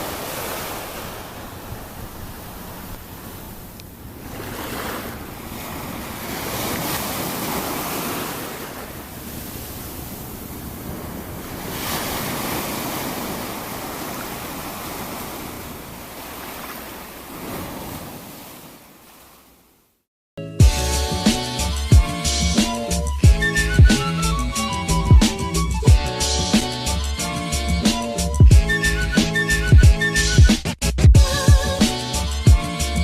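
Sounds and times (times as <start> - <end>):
ocean waves breaking: 0.0 - 19.7.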